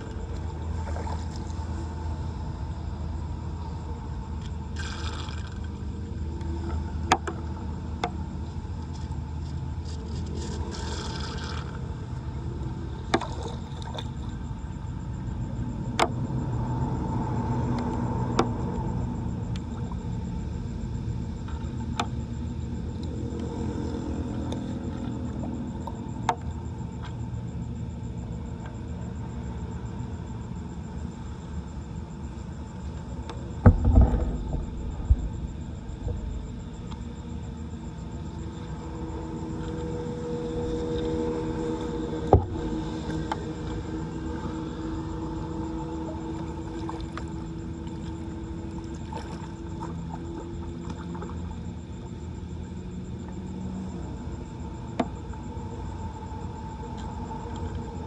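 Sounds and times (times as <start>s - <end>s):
sharp knocks: 33.6s - 36.6s
heavy thump: 33.6s - 37.0s.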